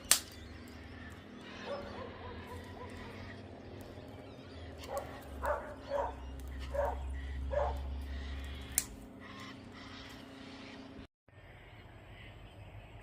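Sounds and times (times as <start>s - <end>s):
sharp snap: 0.0s - 0.4s, 8.7s - 9.0s
dog barking: 1.6s - 3.2s, 4.8s - 7.9s.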